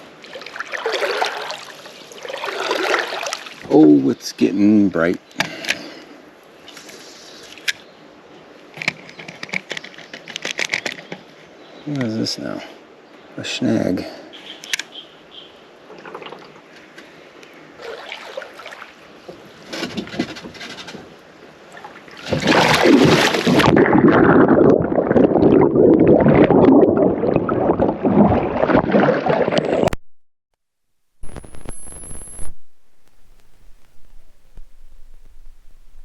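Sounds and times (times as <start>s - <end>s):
churning water: 0.0s - 4.0s, 17.8s - 19.8s, 21.5s - 30.0s
loud splash: 17.8s - 19.0s, 22.2s - 29.8s.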